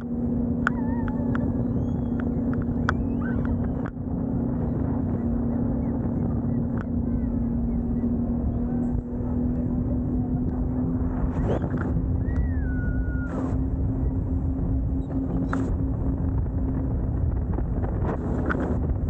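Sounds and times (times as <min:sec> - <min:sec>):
boat engine running: 0:00.0 - 0:19.0
faint chirps and clicks: 0:00.6 - 0:04.0, 0:05.2 - 0:08.1, 0:15.0 - 0:15.7.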